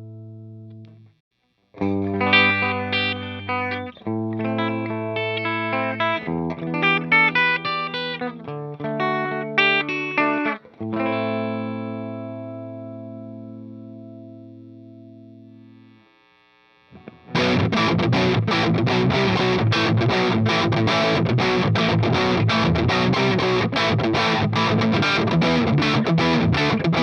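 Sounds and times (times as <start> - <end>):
electric guitar chords and notes: 0.0 - 1.0, 1.7 - 27.0.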